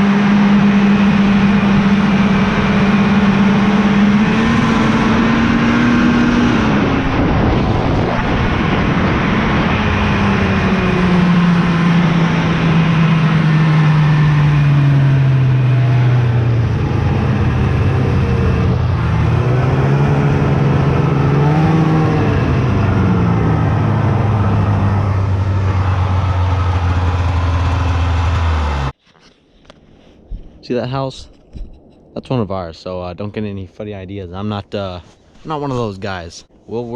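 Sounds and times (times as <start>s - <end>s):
vehicle engine running: 0.0s - 29.0s.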